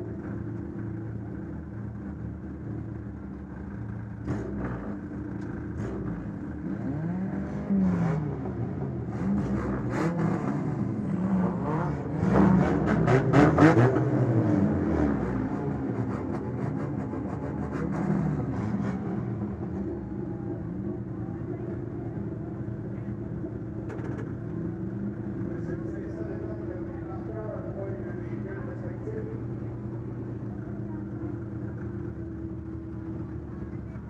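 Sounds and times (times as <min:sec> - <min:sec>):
car engine revving: 0:04.2 - 0:19.8.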